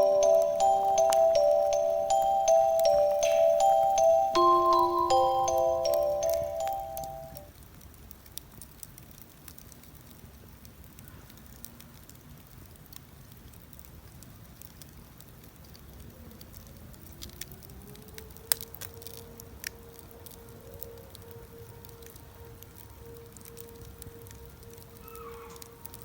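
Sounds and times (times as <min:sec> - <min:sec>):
faint steady tone: 0:00.0 - 0:07.5
campfire crackling and popping: 0:00.0 - 0:26.0.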